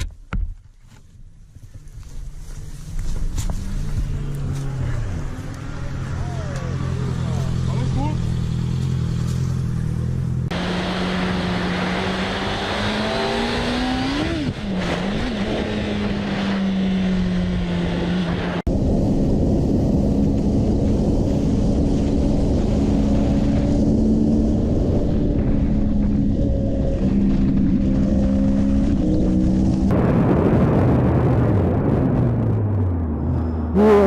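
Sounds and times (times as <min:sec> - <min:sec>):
wind and road noise: 0:00.0 - 0:34.0
motorcycle engine running: 0:01.6 - 0:12.2, 0:18.8 - 0:29.9.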